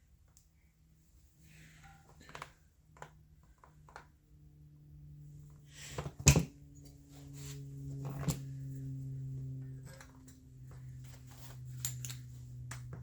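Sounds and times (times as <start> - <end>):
steady low hum: 0.0 - 13.0
clicks of parts being handled: 11.8 - 13.0.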